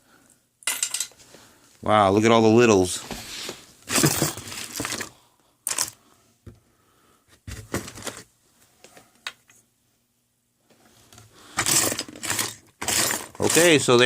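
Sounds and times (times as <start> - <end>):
sewing items clicking and rattling: 3.8 - 6.0, 7.6 - 8.3, 11.5 - 14.0.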